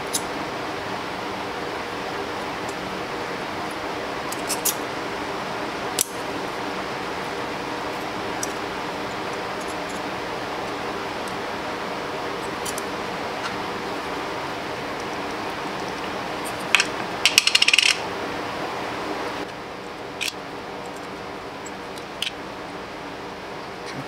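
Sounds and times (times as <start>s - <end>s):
metallic clicks of small parts: 16.6s - 18.0s.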